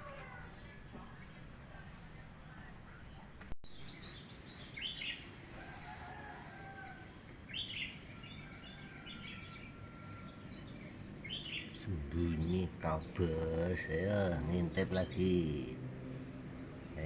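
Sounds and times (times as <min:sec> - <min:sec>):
rooster crowing: 0:00.0 - 0:00.8, 0:05.3 - 0:10.8
chickens calling: 0:00.0 - 0:01.2.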